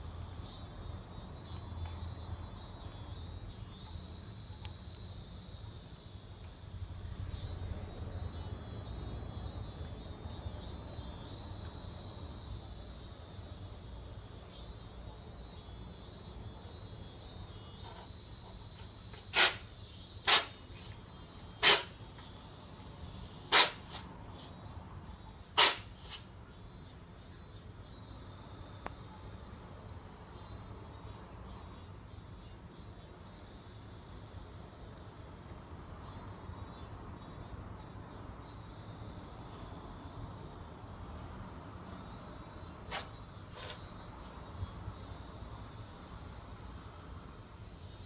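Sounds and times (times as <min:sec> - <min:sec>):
crickets chirping: 0:00.0 - 0:48.0
cat sneezing: 0:19.3 - 0:19.6, 0:21.6 - 0:21.9, 0:23.5 - 0:24.1, 0:25.6 - 0:26.2, 0:42.9 - 0:43.8.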